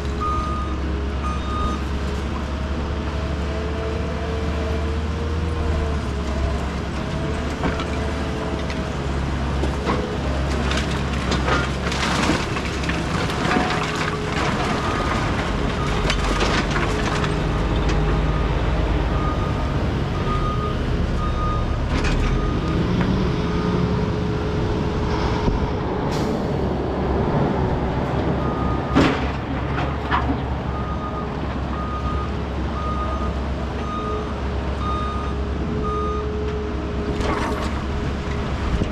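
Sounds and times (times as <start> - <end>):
heavy diesel equipment running: 0.0 - 38.9
broken concrete clanking: 9.6 - 18.2.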